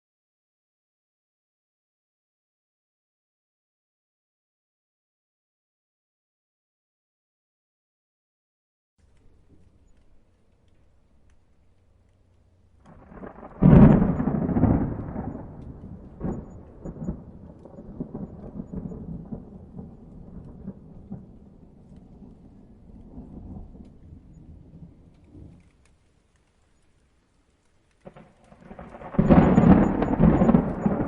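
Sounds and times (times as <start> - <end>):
thunder cracking and rumbling: 12.1 - 25.9, 28.0 - 31.0.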